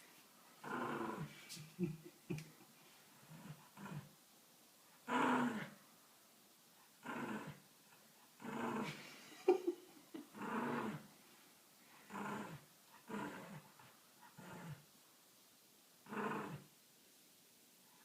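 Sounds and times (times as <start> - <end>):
dog growling: 0.6 - 1.4, 3.2 - 4.1, 8.4 - 9.1, 10.3 - 11.1, 12.1 - 14.8, 16.0 - 16.7.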